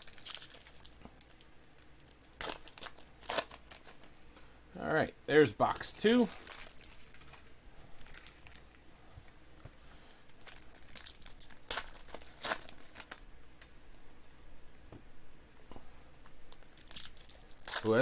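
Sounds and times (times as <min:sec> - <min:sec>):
plastic wrapping crinkling and tearing: 0:00.0 - 0:04.2, 0:05.7 - 0:08.8, 0:10.3 - 0:13.3, 0:16.5 - 0:18.0.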